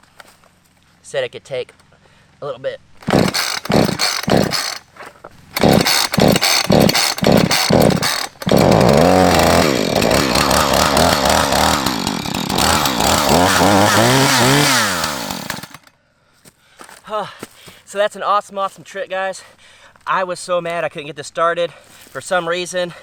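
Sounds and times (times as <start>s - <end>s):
chainsaw engine revving: 3.0s - 15.9s
starter cord pulls: 3.0s - 15.9s.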